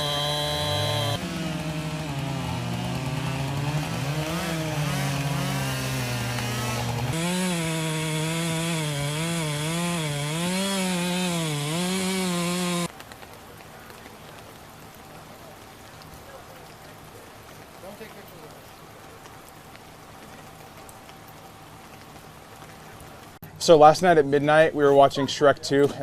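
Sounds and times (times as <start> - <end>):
chainsaw running and cutting: 0.0 - 12.9
faint steady hiss: 12.9 - 26.0.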